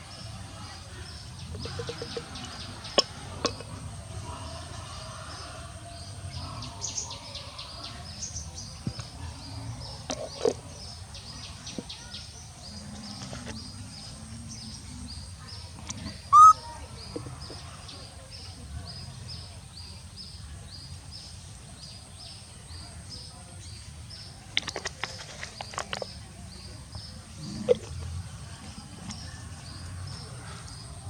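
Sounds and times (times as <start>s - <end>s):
small birds chirping: 0.0s - 31.0s
high-pitched bird call: 16.3s - 16.7s.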